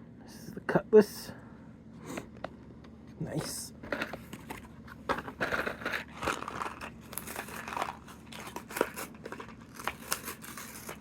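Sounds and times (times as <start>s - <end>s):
packet crinkling and tearing: 3.9s - 11.0s.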